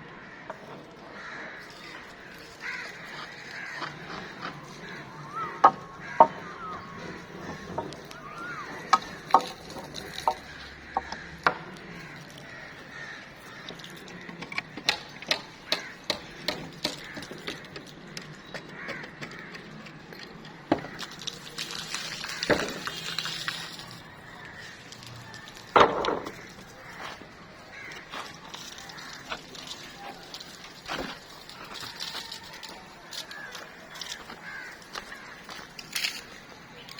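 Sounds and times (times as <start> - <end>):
bird calls: 0.1 - 36.9
building work knocks and taps: 5.3 - 8.2, 8.9 - 11.8, 14.3 - 19.9, 20.7 - 21.1, 25.7 - 26.6.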